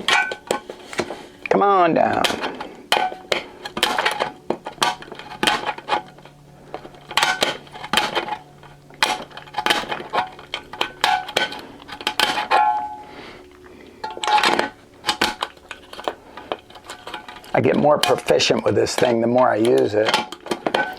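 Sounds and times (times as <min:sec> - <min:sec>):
metal bin ringing: 0:00.0 - 0:00.7, 0:01.5 - 0:13.3, 0:16.9 - 0:20.9
nibbler punching through metal: 0:00.0 - 0:13.3, 0:14.0 - 0:20.9.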